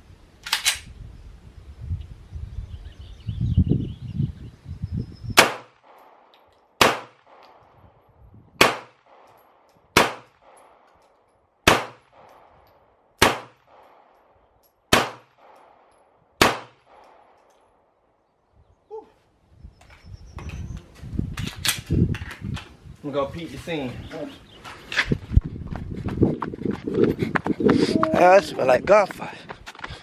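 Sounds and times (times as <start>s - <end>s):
gunshots: 5.4s - 7.5s, 8.6s - 9.3s, 10.0s - 10.8s, 11.6s - 12.3s, 13.2s - 14.1s, 14.9s - 17.4s.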